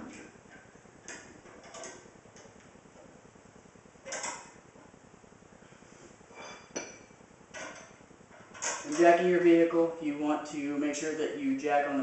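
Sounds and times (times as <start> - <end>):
metal clink: 6.4 - 8.0.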